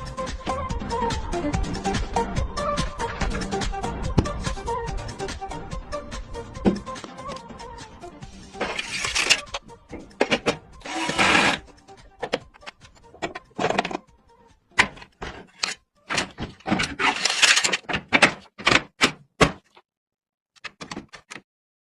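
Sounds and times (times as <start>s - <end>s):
handling clicks and knocks: 12.2s - 14.0s, 14.8s - 19.8s, 20.6s - 21.4s
packaging rustling: 15.4s - 17.9s.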